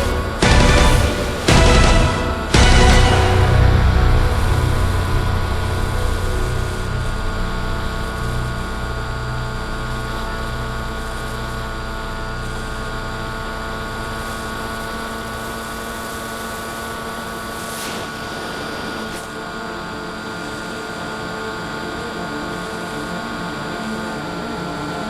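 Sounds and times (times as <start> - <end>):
drone propellers whining: 0.0 - 10.9.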